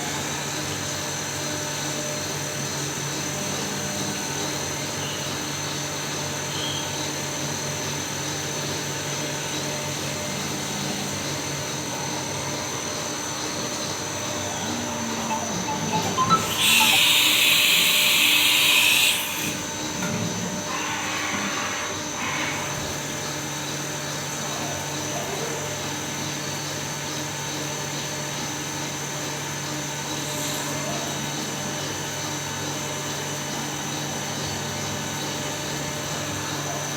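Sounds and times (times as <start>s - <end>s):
machine humming: 10.4s - 23.1s
compressed air hissing: 16.1s - 19.7s.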